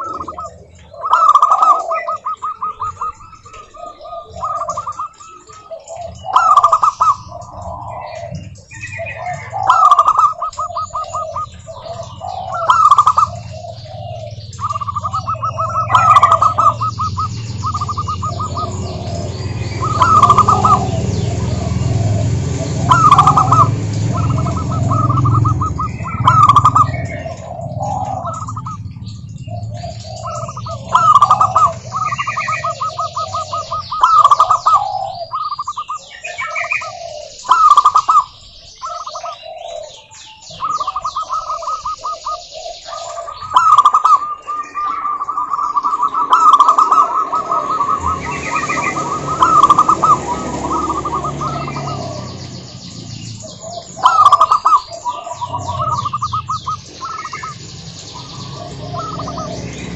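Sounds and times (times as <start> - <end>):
doves cooing: 0.0 - 59.9
higher chirping notes: 0.0 - 59.9.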